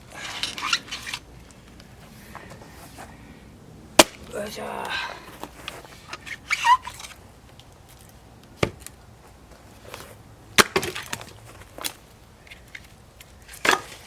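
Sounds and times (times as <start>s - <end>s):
axe strikes splitting firewood: 4.0s - 4.4s, 8.6s - 8.9s, 10.6s - 11.3s.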